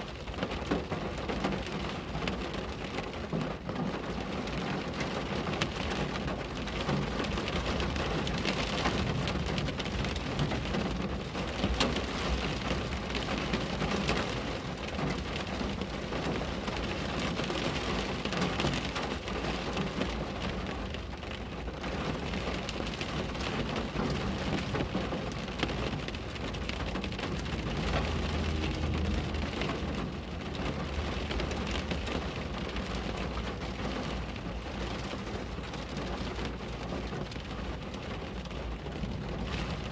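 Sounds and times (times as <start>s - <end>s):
rain on a window pane: 0.0s - 39.9s
low rumble: 27.0s - 32.5s.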